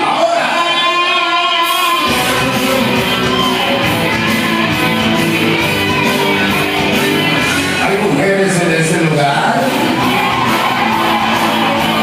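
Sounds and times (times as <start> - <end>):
loud club music with guitar: 0.0 - 12.0.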